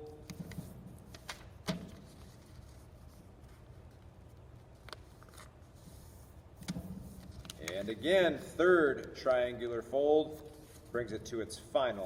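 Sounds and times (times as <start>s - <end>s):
paper crinkling and folding: 2.1s - 6.3s.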